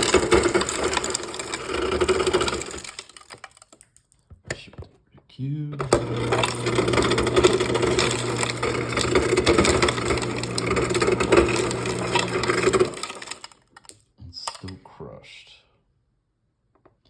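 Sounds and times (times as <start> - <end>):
crushed ice rattling out: 0.0 - 3.7, 5.9 - 13.6
ice crusher grinding: 0.0 - 3.8, 5.8 - 13.7
motor humming: 5.8 - 13.5.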